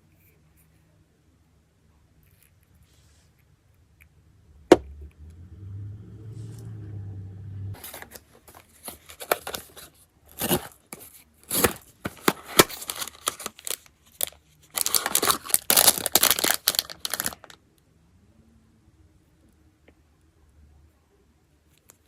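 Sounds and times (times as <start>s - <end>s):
packaging torn and crinkled: 7.8s - 10.8s, 11.4s - 17.6s.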